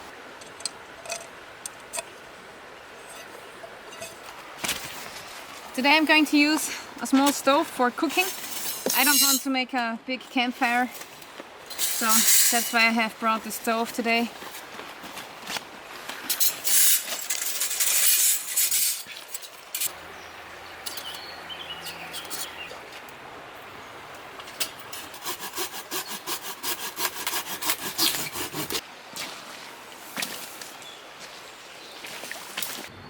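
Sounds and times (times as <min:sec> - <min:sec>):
hand saw cutting branch: 0:07.2 - 0:09.5, 0:11.7 - 0:12.9, 0:24.8 - 0:28.8.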